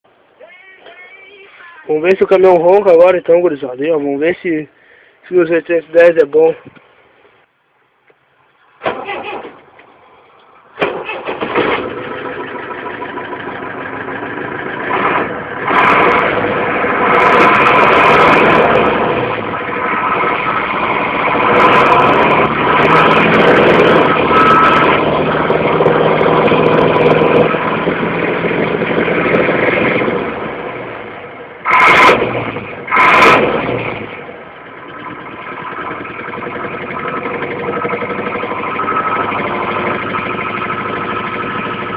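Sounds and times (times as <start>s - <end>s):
diesel truck engine revving: 8.8s - 41.9s
engine throttle blips: 8.8s - 41.9s.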